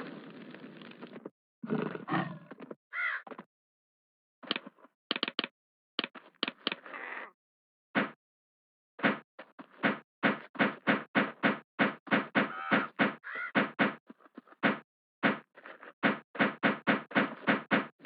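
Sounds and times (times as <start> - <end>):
sharp knocks and taps: 4.4 - 6.8, 9.8 - 14.0, 14.6 - 18.0.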